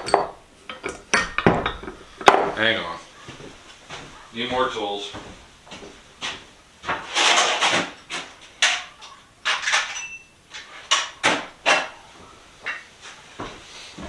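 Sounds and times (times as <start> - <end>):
metal hand tools clanking: 0.0 - 2.9
metallic ring: 9.9 - 10.3.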